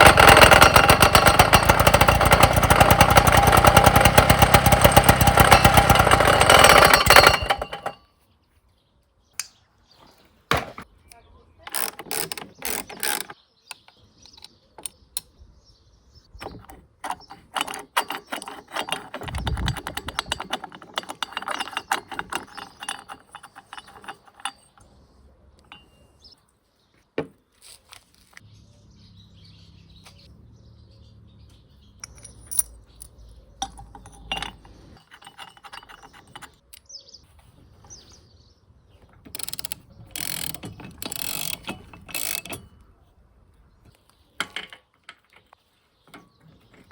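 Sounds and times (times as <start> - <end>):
metal clattering: 0.0 - 8.0
recoil starter clicking and ratcheting: 0.0 - 8.0, 11.6 - 15.3, 16.4 - 24.9, 32.0 - 36.9, 39.1 - 42.9.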